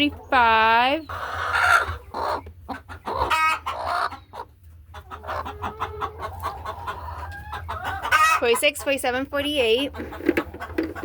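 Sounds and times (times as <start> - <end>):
hens low murmur: 0.0 - 8.6
hens clucking and calling: 0.0 - 11.0.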